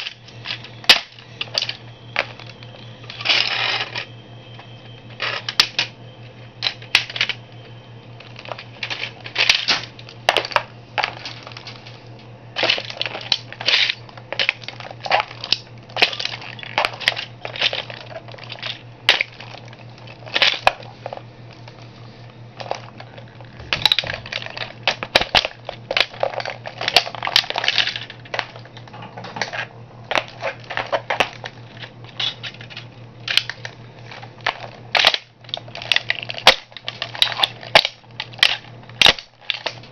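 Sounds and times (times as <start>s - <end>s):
steady low hum: 0.0s - 39.9s
toy car crunching underfoot: 12.6s - 21.2s.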